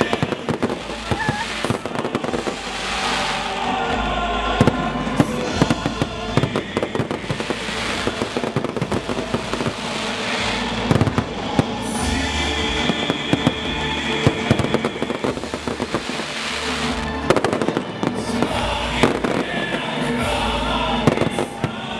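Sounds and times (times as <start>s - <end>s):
fireworks bangs: 0.0s - 21.9s
fireworks crackling: 0.0s - 21.9s
music with held notes: 0.0s - 21.9s.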